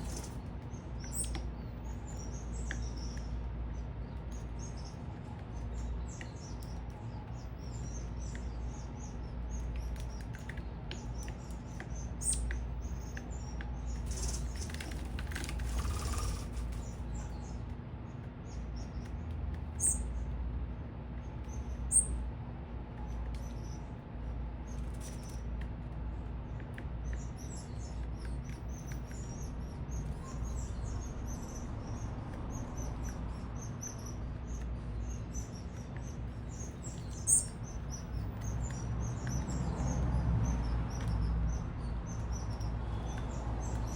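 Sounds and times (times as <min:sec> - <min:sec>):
low city rumble: 0:00.0 - 0:43.9
small birds chirping: 0:00.0 - 0:43.9.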